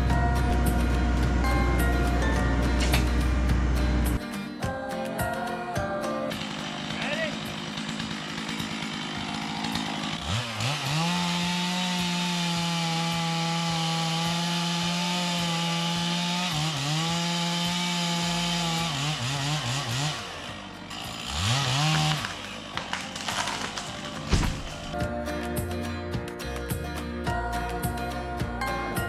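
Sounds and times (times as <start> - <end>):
chainsaw revving: 0.0 - 4.2, 6.3 - 25.0.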